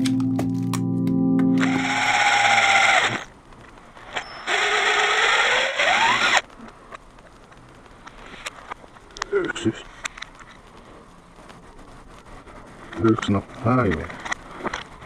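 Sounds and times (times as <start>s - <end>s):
power drill motor whine: 1.6s - 3.3s, 4.1s - 6.4s.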